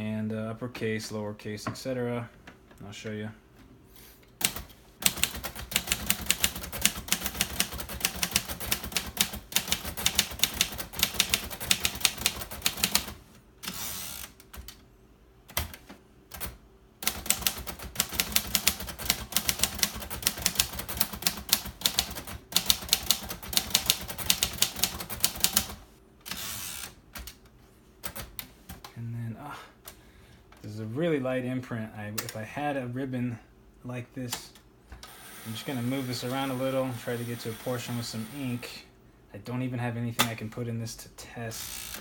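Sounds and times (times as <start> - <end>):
manual typewriter typing: 4.4 - 14.8, 15.5 - 27.4.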